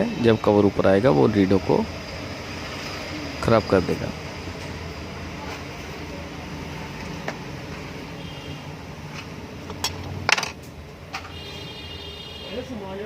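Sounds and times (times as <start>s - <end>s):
metal clinks and knocks: 9.2s - 11.4s.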